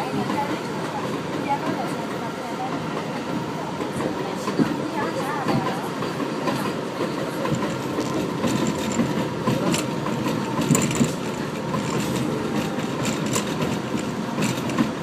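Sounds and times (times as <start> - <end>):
train wheels rumbling on rail: 0.0 - 15.0
wheels clattering over rail joints: 3.9 - 15.0.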